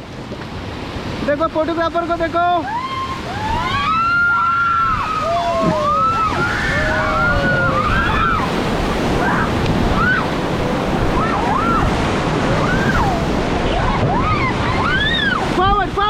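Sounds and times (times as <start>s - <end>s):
river water rushing: 0.0s - 16.0s
people crying out: 2.7s - 10.3s
wind buffeting microphone: 3.0s - 16.0s.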